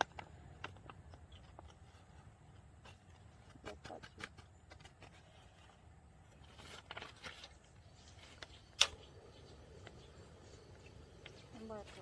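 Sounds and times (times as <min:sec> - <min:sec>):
faint scraping and rustling: 0:00.1 - 0:12.0.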